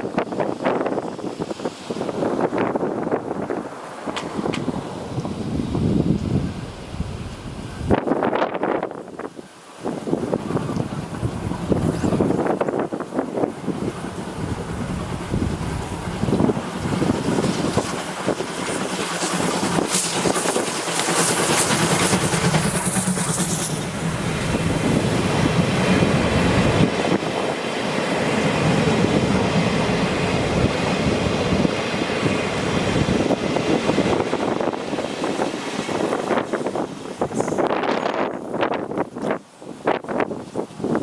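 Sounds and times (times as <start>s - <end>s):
wind buffeting microphone: 0.0s - 41.0s
train carriages clattering over rails: 10.3s - 39.3s.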